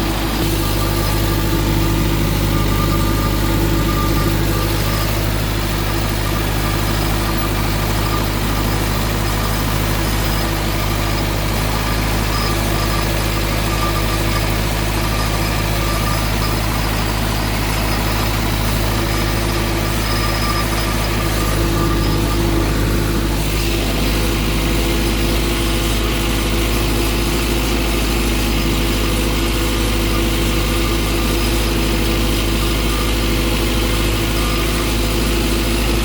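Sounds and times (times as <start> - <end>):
tractor engine running: 0.0 - 36.0.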